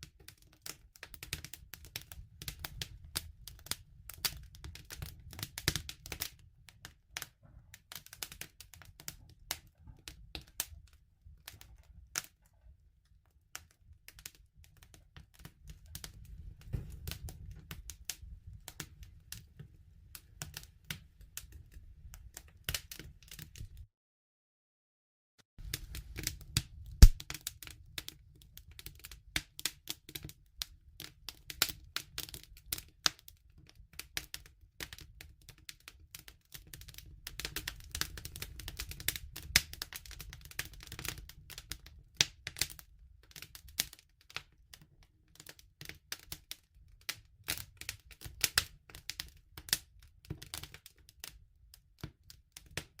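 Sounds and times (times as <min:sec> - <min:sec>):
campfire crackling and popping: 0:00.0 - 0:12.3, 0:13.5 - 0:23.8, 0:25.6 - 0:44.6, 0:45.8 - 0:50.9
low rumble of flames: 0:15.0 - 0:23.8, 0:25.6 - 0:28.9.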